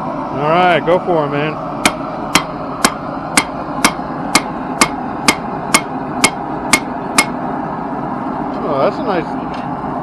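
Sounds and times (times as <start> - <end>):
hammer striking steel on anvil: 1.8 - 7.4.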